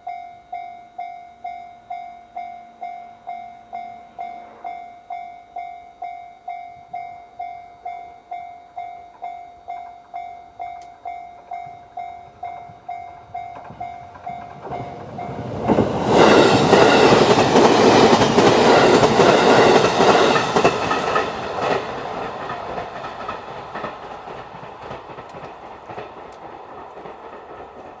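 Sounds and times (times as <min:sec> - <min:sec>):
level crossing alarm dings: 0:00.0 - 0:17.1
electric train passing: 0:00.0 - 0:28.0.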